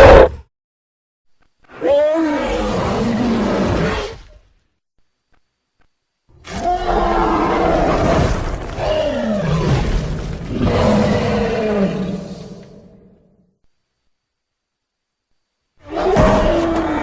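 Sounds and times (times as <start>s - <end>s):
monster roar: 6.4s - 13.0s.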